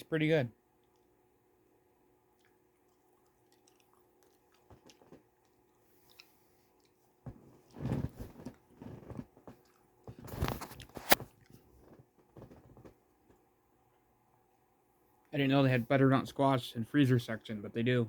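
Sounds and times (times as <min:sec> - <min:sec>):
chewing food: 0:00.7 - 0:12.1.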